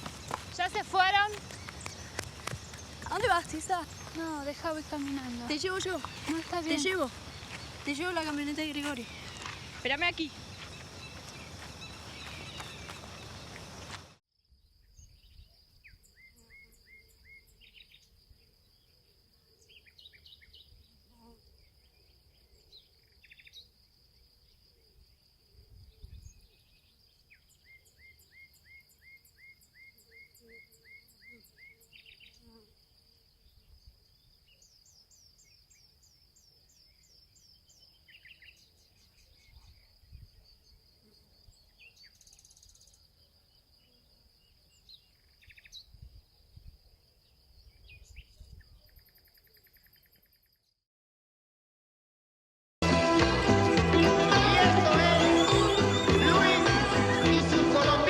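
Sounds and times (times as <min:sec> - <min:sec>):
birds chirping: 0:00.0 - 0:14.2, 0:52.9 - 0:58.0.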